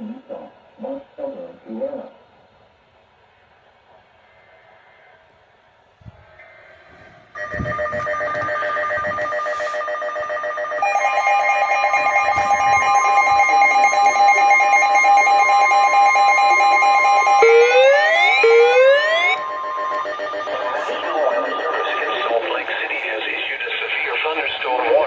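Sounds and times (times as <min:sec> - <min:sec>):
pulsing electronic alert tones: 0:07.4 - 0:22.4.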